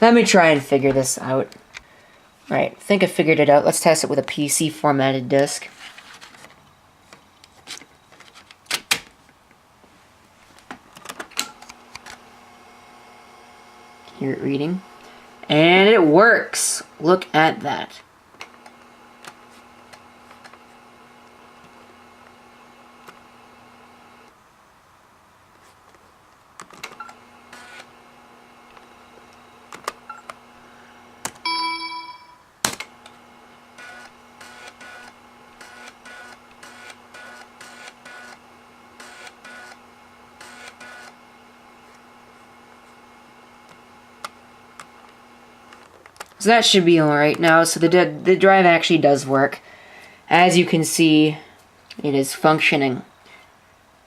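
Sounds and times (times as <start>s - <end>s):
floppy drive clicking: 18.4s - 24.3s, 32.6s - 46.4s
computer chime: 31.4s - 32.5s.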